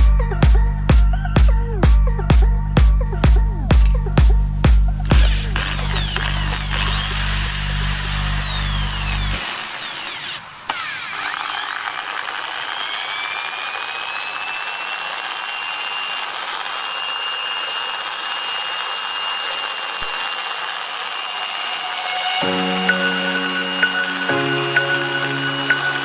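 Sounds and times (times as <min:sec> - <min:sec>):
electric drill motor whine: 0:05.0 - 0:26.0
electric drill switch click: 0:05.1 - 0:15.1.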